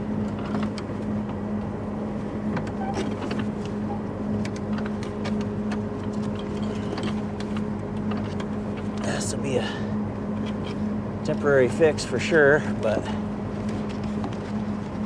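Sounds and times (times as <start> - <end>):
combine engine humming: 0.0 - 15.0.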